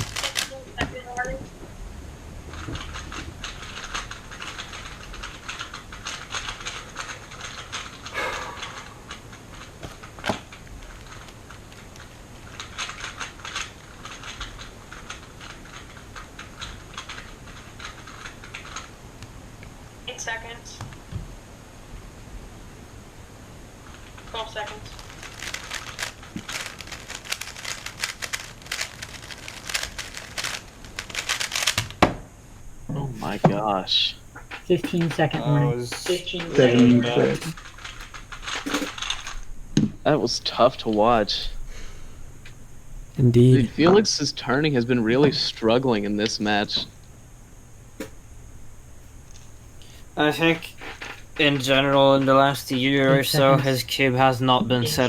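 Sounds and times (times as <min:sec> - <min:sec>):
puzzle cube plastic clicks: 0:00.0 - 0:00.6, 0:25.1 - 0:32.0, 0:37.5 - 0:39.5.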